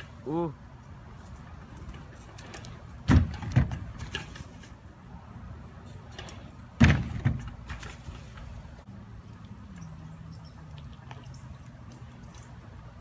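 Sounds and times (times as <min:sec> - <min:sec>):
bike wheels thudding down: 0:02.2 - 0:04.8, 0:06.2 - 0:08.7.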